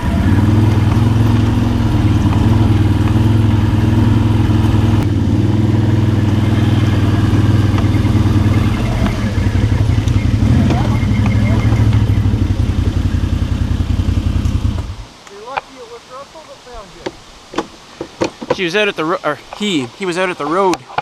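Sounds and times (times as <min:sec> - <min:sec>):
atv engine running: 0:00.0 - 0:15.6.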